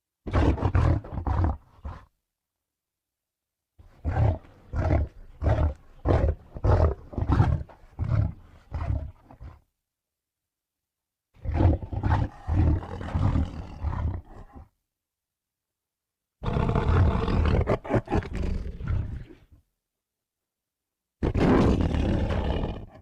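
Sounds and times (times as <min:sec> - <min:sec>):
big cat roaring in pulses: 0:21.2 - 0:23.0.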